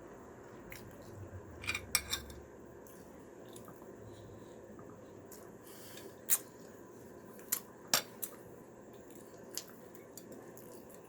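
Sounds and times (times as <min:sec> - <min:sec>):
utensils clinking on plates: 0:01.6 - 0:02.4.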